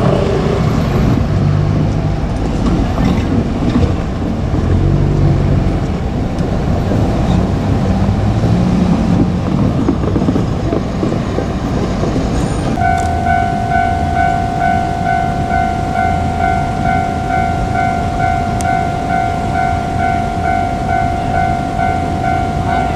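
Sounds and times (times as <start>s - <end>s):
low rumble of a train: 0.0s - 22.9s
level crossing warning bell: 12.7s - 22.9s.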